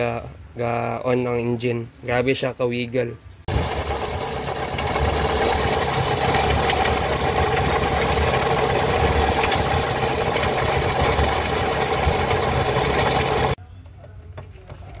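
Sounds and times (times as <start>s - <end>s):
car engine idling: 3.5s - 13.6s.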